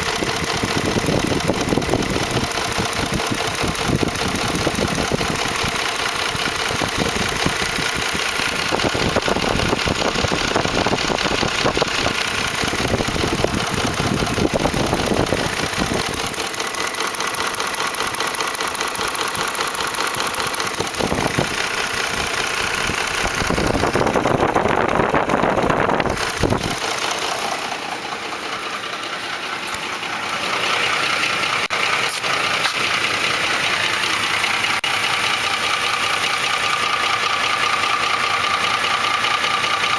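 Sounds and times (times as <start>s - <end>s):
timing chain slapping and ticking: 0.0s - 30.2s
engine idling with deep rumble: 0.0s - 39.9s.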